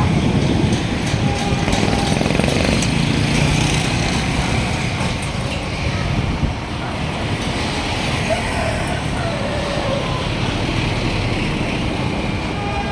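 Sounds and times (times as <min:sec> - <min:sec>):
street traffic: 0:00.0 - 0:12.9
vehicle engine: 0:00.2 - 0:05.5.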